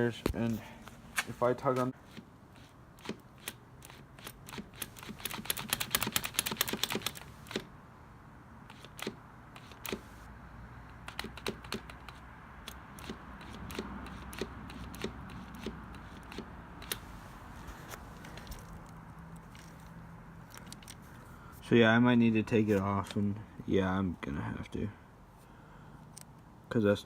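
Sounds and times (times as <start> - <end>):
clutch lever clicking: 3.0 - 7.7, 11.0 - 17.0.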